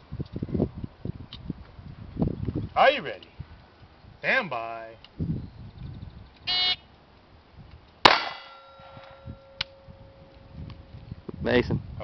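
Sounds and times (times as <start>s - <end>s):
pistol shot: 8.0s - 9.1s
steel target plate ringing: 8.1s - 10.1s.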